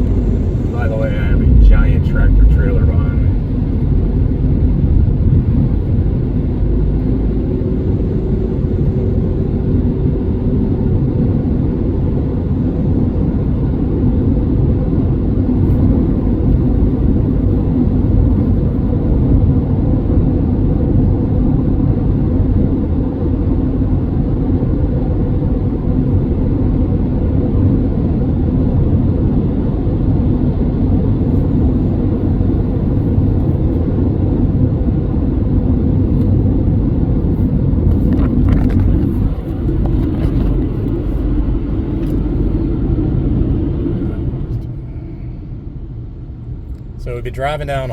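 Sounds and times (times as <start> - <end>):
car engine and road rumble: 0.0 - 47.9.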